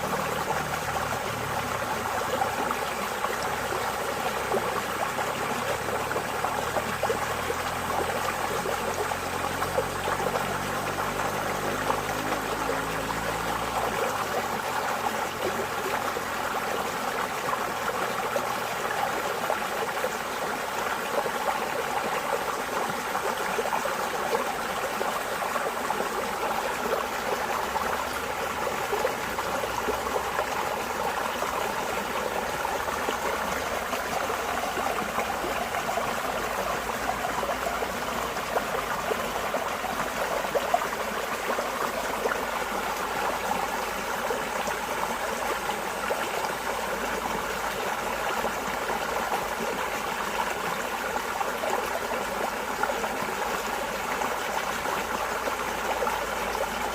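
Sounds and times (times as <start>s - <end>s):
water flowing in a stream: 0.0s - 56.9s.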